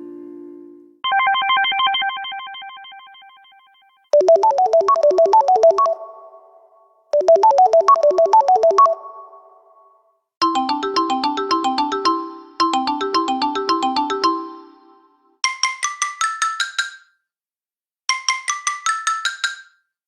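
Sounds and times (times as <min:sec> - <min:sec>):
bright synthesized phone tone: 0:01.0 - 0:06.6, 0:07.2 - 0:09.7
repeating phone tone pattern: 0:01.1 - 0:03.6, 0:04.2 - 0:06.6, 0:07.2 - 0:09.5.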